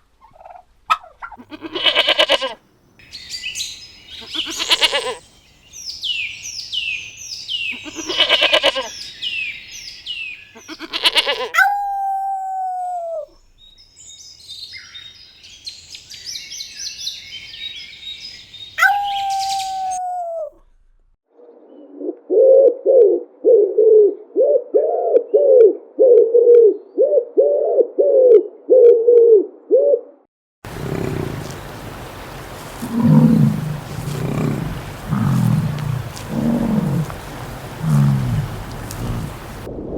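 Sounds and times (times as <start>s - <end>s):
birds chirping and chattering: 16.9s - 20.0s, 30.7s - 39.7s
short low bird calls: 17.3s - 20.5s, 30.7s - 39.7s.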